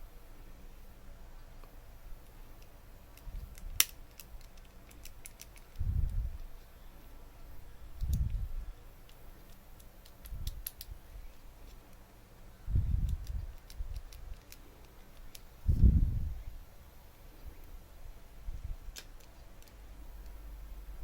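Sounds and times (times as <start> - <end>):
light sharp clicks: 8.0 - 8.4.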